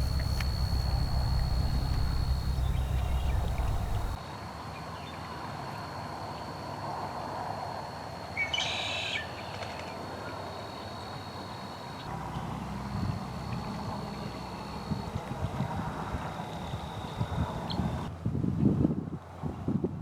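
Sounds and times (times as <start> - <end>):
bird call: 0.0 - 4.2
low rumble: 0.0 - 4.2
thin high whine: 0.0 - 4.2.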